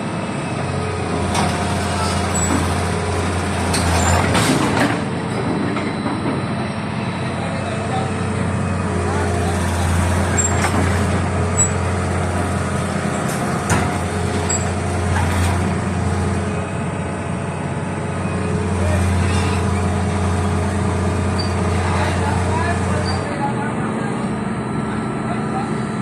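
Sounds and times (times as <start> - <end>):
diesel engine running: 0.0 - 26.0
sharp knocks and clanks: 3.7 - 6.5, 13.2 - 15.6.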